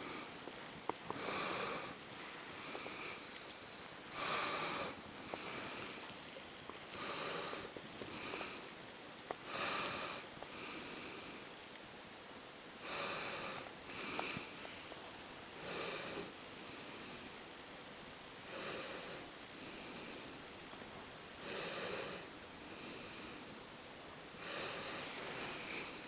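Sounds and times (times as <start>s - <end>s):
kitten snoring: 1.1s - 3.4s, 4.1s - 6.3s, 6.9s - 8.7s, 9.4s - 11.4s, 12.8s - 14.9s, 15.6s - 17.4s, 18.4s - 20.4s, 21.4s - 23.6s, 24.4s - 26.0s.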